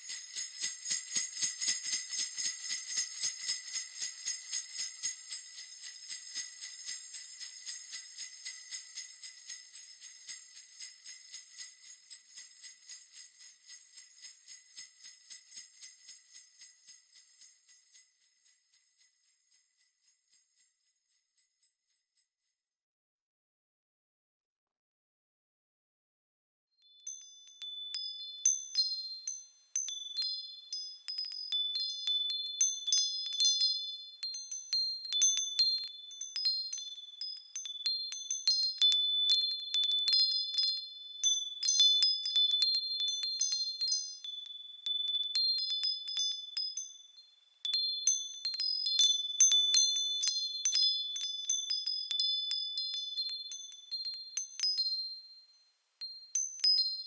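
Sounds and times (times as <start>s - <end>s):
metal chimes tinkling: 26.8s - 57.0s.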